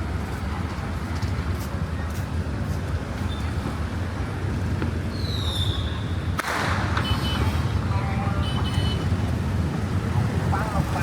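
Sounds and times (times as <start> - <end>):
traffic rumble: 0.0 - 11.0.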